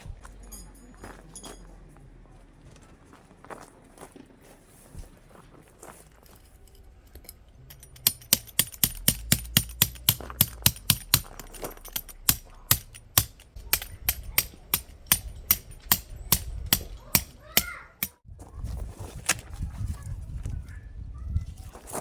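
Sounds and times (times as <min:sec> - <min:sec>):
hammer striking metal tent pegs: 0:07.2 - 0:18.2.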